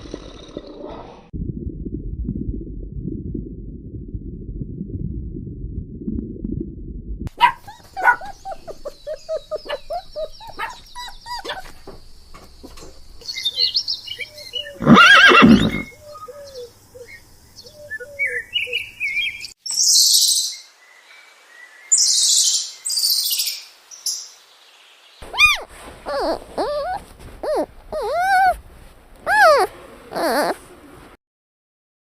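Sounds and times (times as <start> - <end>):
animal calls and chirps: 7.4 - 20.7, 25.2 - 28.6, 29.3 - 30.6.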